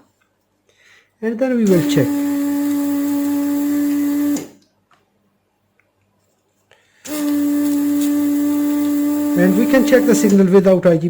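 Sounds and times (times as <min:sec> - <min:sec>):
electric hum of bench tool: 0:01.5 - 0:04.6, 0:07.0 - 0:10.5.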